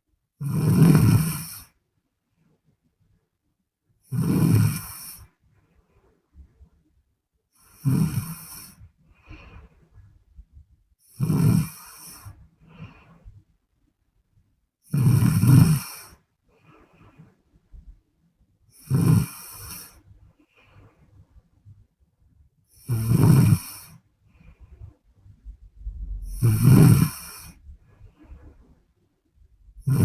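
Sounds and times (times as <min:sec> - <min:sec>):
woman snoring: 0:00.4 - 0:01.8, 0:04.1 - 0:05.3, 0:07.6 - 0:09.6, 0:11.0 - 0:12.9, 0:14.9 - 0:16.2, 0:18.7 - 0:20.0, 0:22.8 - 0:24.0, 0:26.2 - 0:27.6, 0:29.8 - 0:30.0
faint breath: 0:07.6 - 0:10.6, 0:11.6 - 0:13.5, 0:15.7 - 0:17.9, 0:19.2 - 0:21.4, 0:23.5 - 0:28.9.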